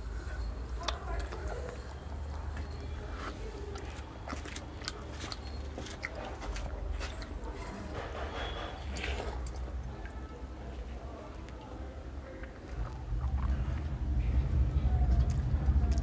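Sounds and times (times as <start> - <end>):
person chewing and smacking: 0.2 - 10.2, 12.3 - 14.0
low steady hum: 8.8 - 16.0.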